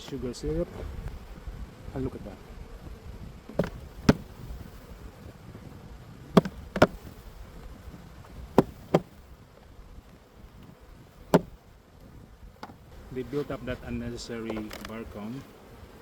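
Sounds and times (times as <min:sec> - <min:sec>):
honeybees buzzing: 0:00.0 - 0:16.0
sharp knocks: 0:03.6 - 0:04.3, 0:06.4 - 0:07.1, 0:08.6 - 0:09.2, 0:11.3 - 0:11.6.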